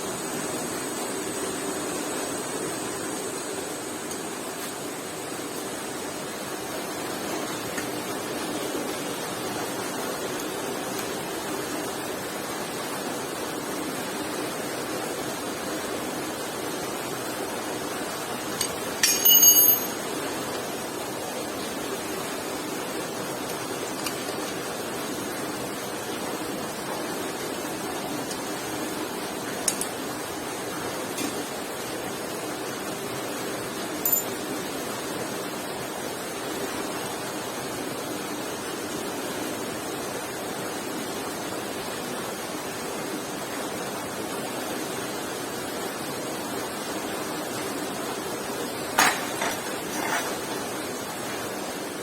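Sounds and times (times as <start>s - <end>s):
background hiss: 0.0s - 52.0s
metallic clink: 18.6s - 20.0s, 34.0s - 34.4s.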